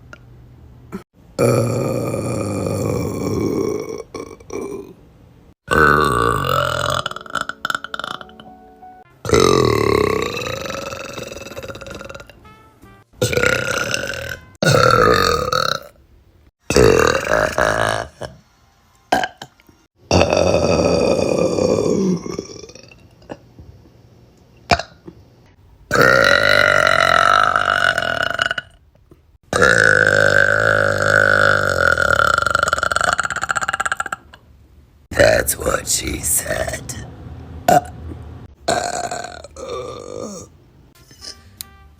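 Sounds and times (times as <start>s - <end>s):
women burping: 1.4s - 5.0s, 5.7s - 8.4s, 13.2s - 15.9s, 25.9s - 28.7s, 38.7s - 40.5s.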